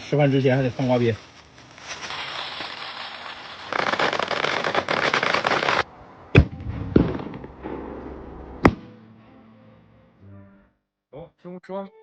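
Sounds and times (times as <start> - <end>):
firecrackers crackling: 0.0 - 8.0
loud bangs: 5.8 - 9.5.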